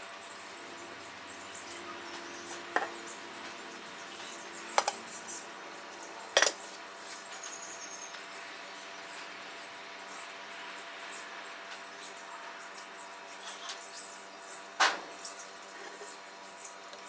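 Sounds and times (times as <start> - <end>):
cups and utensils clinking: 4.8 - 5.0, 6.4 - 6.7.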